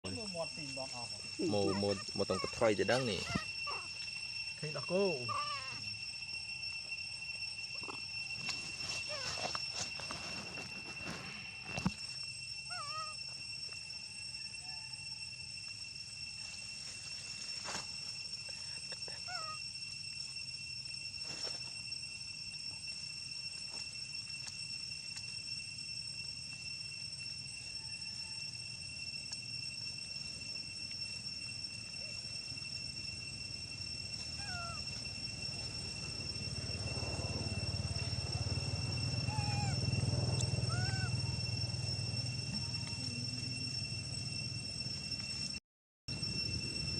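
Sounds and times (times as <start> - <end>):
steady high whine: 0.0 - 46.9
monkey whistling calls: 1.1 - 6.0, 12.7 - 13.2, 19.0 - 19.6, 34.0 - 36.2, 37.0 - 43.4.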